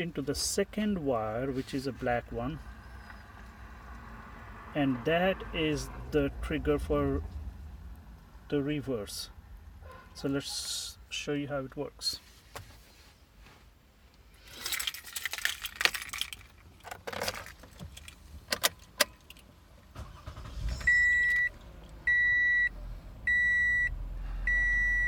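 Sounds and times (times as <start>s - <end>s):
car engine starting: 1.5s - 9.9s, 14.7s - 25.0s
car keys jangling: 14.4s - 21.4s
dashboard warning chime beeps: 20.9s - 21.5s, 22.1s - 22.7s, 23.3s - 23.9s, 24.5s - 25.0s.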